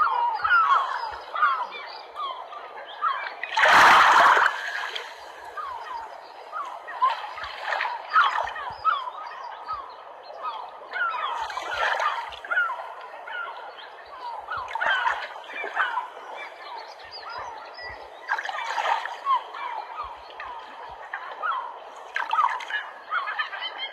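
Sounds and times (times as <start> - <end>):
waterbirds calling: 0.0 - 23.9
water splashing: 3.4 - 5.9.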